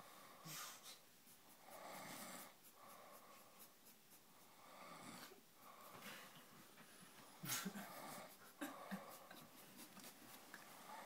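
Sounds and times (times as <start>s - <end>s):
faint snoring: 1.6s - 3.6s, 4.4s - 6.2s.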